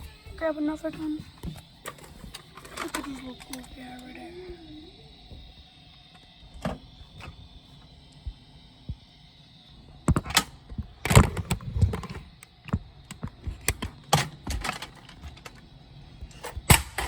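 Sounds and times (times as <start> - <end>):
plastic toy blasters clicking: 1.8 - 4.2.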